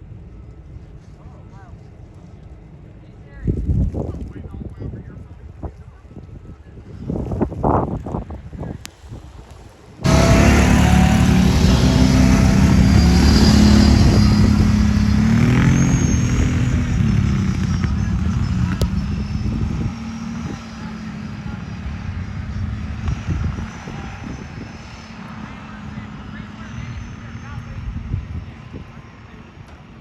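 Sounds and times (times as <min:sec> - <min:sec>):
vehicle engine running loudly: 0:10.0 - 0:28.0.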